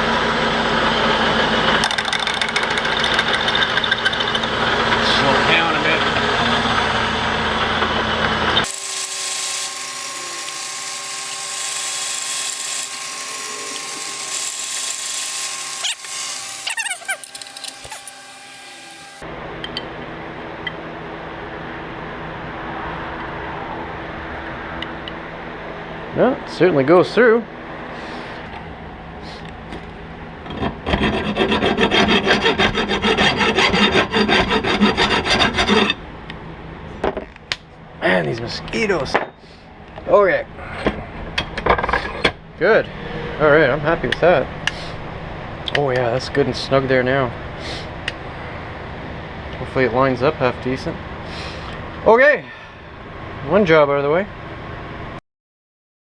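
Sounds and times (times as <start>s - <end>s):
milling machine spindle whine: 3.8s - 19.2s
drill bit squealing: 8.6s - 19.2s
hand tool rasping on metal: 8.6s - 19.2s, 31.0s - 36.0s.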